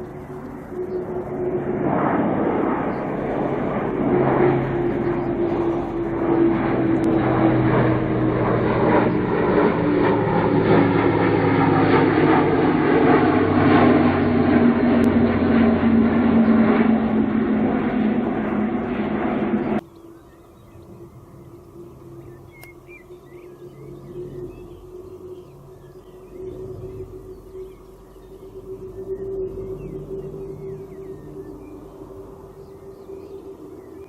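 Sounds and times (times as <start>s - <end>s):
turboprop aircraft flying past: 0.0s - 34.0s.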